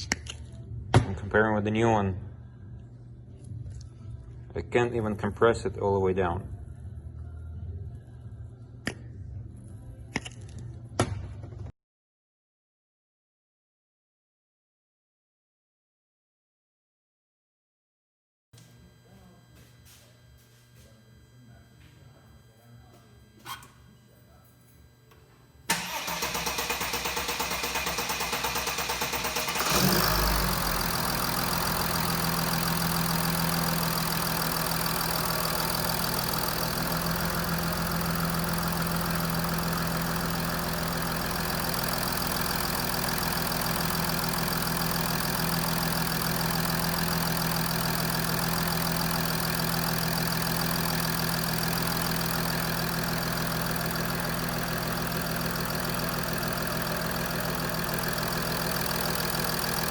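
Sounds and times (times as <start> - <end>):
diesel engine cranking and idling: 25.7 - 59.9.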